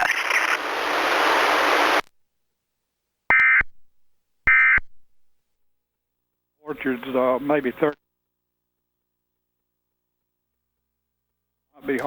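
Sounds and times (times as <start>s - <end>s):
static hiss: 0.0s - 2.1s.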